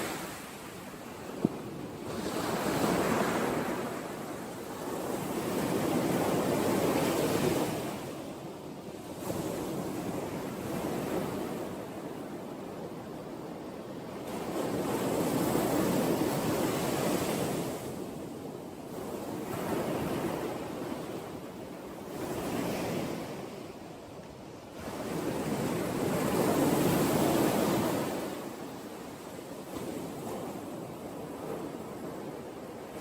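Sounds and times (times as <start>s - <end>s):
sea waves breaking on shore: 0.0s - 33.0s.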